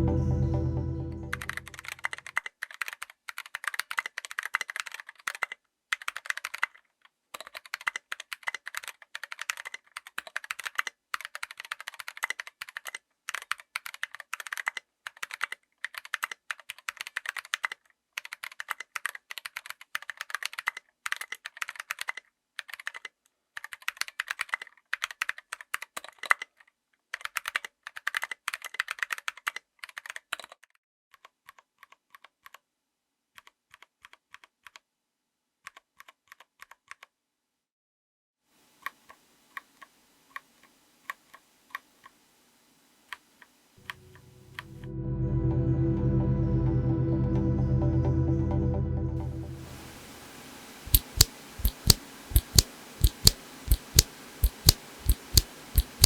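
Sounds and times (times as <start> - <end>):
mechanical keyboard typing clacks: 1.4 - 6.8, 7.4 - 26.6, 27.2 - 32.6, 50.9 - 56.0.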